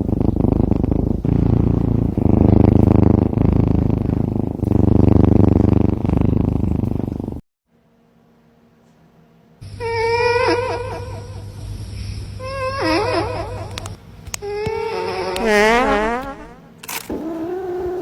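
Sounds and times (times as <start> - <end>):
cat purring: 0.0 - 7.4, 15.4 - 18.0.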